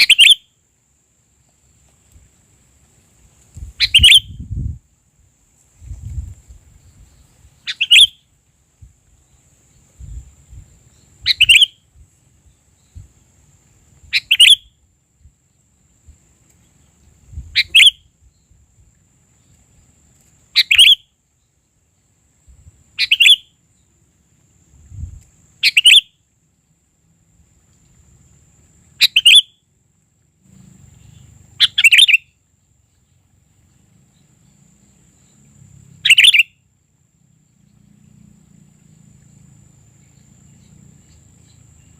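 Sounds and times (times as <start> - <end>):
bird chirping phrase: 31.0 - 32.4.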